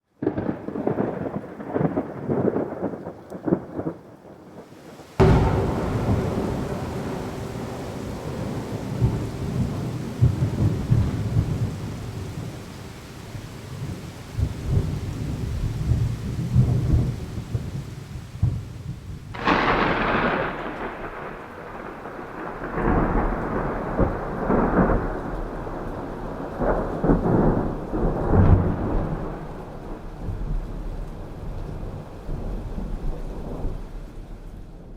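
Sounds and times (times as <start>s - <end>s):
thunder cracking: 0.2s - 34.9s
thunder rumbling: 0.2s - 34.9s.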